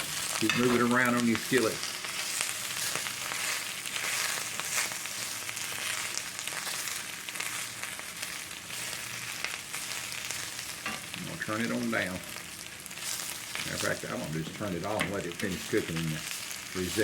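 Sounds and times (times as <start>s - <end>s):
food scraping around pan: 0.0s - 11.2s
food sizzling in a skillet: 0.0s - 17.0s.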